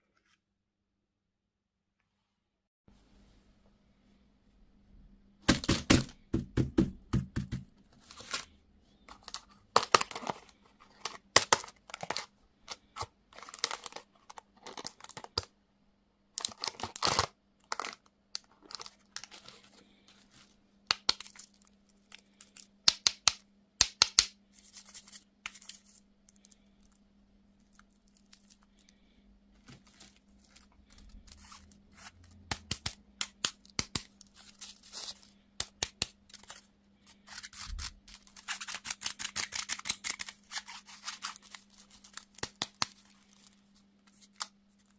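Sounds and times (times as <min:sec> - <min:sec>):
faint steady hum: 0:02.9 - 0:44.9
candy wrapper crinkling and ripping: 0:09.1 - 0:15.5, 0:16.4 - 0:23.2, 0:27.6 - 0:29.1, 0:29.8 - 0:44.9.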